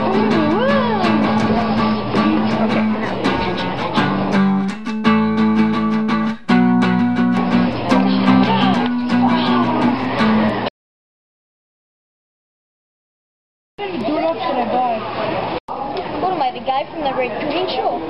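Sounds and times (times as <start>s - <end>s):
guitar music with steady beat: 0.0s - 10.7s.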